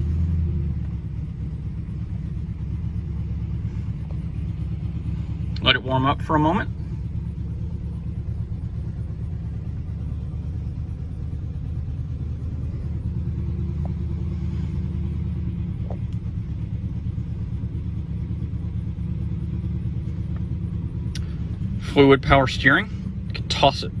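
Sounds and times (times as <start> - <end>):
car engine idling: 0.0 - 24.0.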